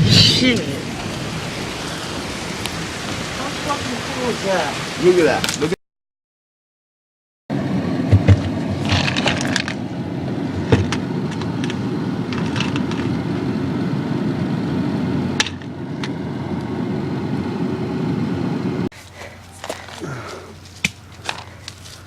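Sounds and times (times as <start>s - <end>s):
heavy downpour: 0.0s - 5.8s.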